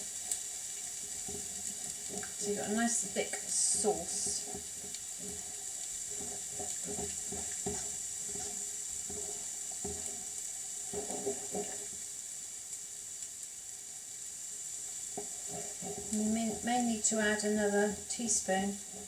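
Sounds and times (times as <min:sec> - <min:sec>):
sauce bubbling in a pan: 0:00.0 - 0:19.0
soft knocks of stirring: 0:00.1 - 0:12.1, 0:15.1 - 0:16.8.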